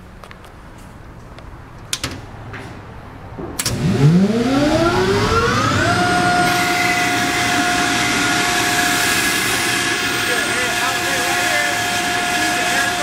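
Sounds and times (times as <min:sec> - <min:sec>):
air compressor whining: 0:03.6 - 0:13.0.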